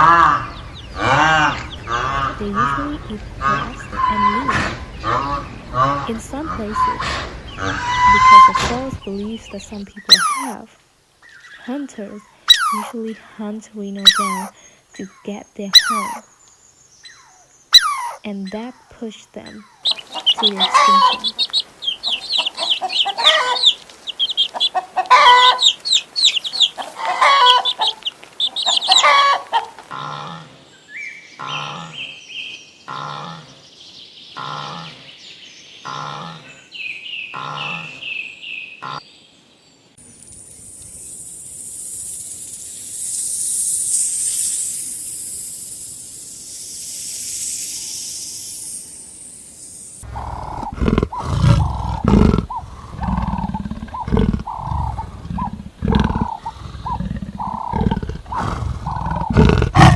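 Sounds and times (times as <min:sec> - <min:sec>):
loud deep animal sounds: 0:00.0 - 0:09.8, 0:50.1 - 0:59.9
chickens clucking: 0:00.0 - 0:10.7, 0:11.6 - 0:14.5, 0:19.5 - 0:30.3, 0:50.0 - 0:59.9
repeated animal call: 0:00.0 - 0:10.7, 0:11.3 - 0:13.1, 0:14.0 - 0:16.3, 0:17.1 - 0:18.7, 0:19.5 - 0:30.7, 0:31.4 - 0:32.2, 0:32.9 - 0:33.6, 0:34.4 - 0:35.1, 0:35.8 - 0:36.7, 0:37.3 - 0:38.2, 0:38.8 - 0:39.0, 0:50.0 - 0:59.9
high hiss: 0:40.0 - 0:59.9.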